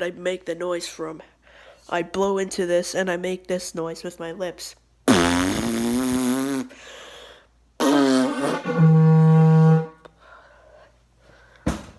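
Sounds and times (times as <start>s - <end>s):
lips buzzing fart noise: 5.1s - 6.8s, 7.8s - 10.0s.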